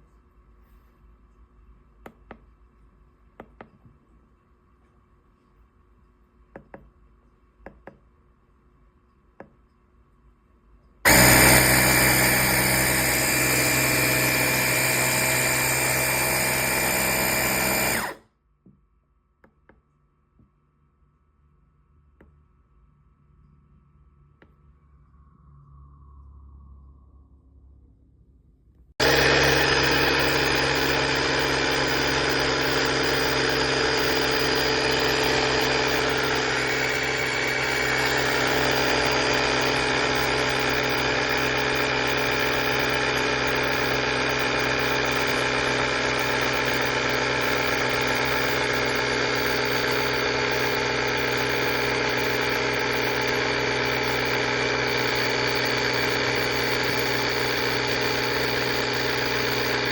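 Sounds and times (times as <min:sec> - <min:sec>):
small air compressor running: 0:11.1 - 0:18.2, 0:29.0 - 0:59.9.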